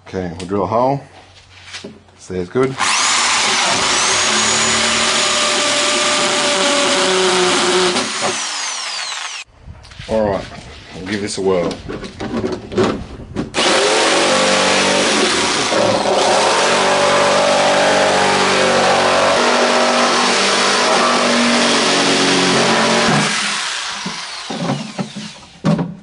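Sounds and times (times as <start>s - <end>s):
power tool cutting plastic: 2.8s - 9.5s, 13.6s - 25.6s.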